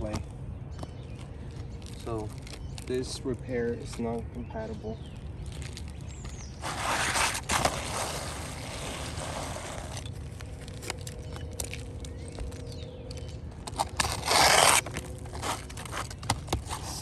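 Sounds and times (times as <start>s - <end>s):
shingles scraping and rustling: 5.5s - 12.8s, 13.6s - 17.0s.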